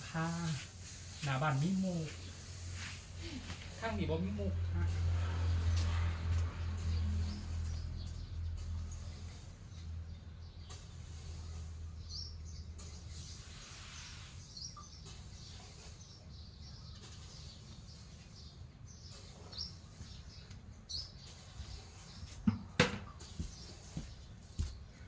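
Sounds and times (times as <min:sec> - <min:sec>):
bird chirping: 0:14.4 - 0:22.4.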